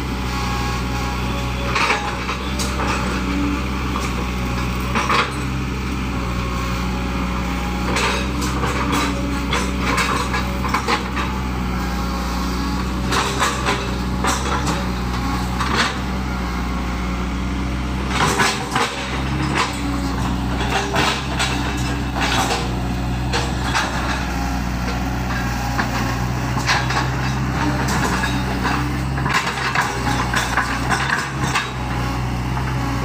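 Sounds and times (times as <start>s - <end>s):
excavator diesel engine running: 0.0s - 33.0s
metallic clanks and knocks: 13.0s - 14.9s, 18.1s - 32.0s.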